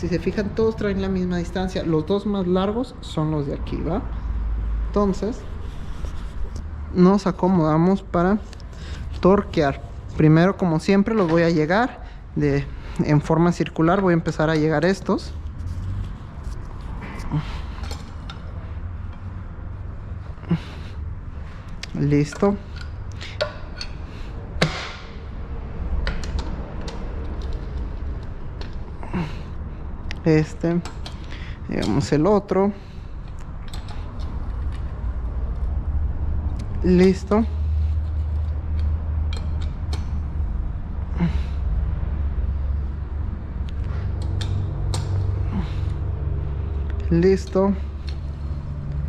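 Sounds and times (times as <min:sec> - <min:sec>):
low workshop hum: 0:00.0 - 0:49.0
hand tools clicking and scraping: 0:13.9 - 0:19.4, 0:21.6 - 0:25.2, 0:30.5 - 0:35.6, 0:37.0 - 0:40.4
light metallic clicks and taps: 0:38.7 - 0:40.2.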